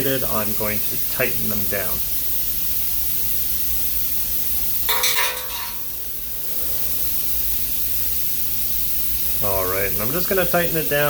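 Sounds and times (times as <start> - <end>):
machine shop hum and hiss: 0.0 - 11.0
ringing metallic scrape: 4.9 - 6.8.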